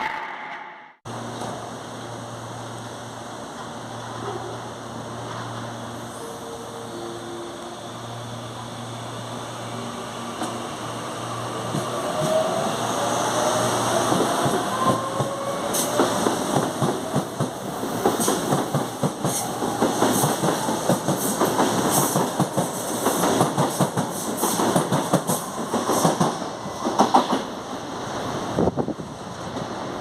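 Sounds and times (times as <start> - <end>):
train wheels clacking over rail joints: 14.1 - 27.5.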